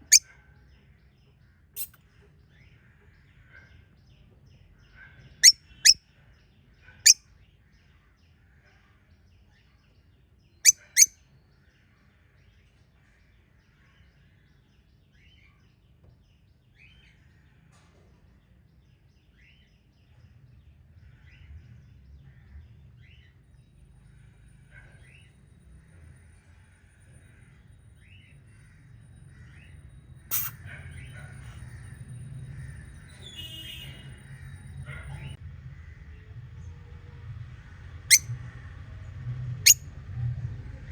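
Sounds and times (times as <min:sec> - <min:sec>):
parrots chirping: 0:00.0 - 0:00.2, 0:10.7 - 0:11.1, 0:30.3 - 0:30.6.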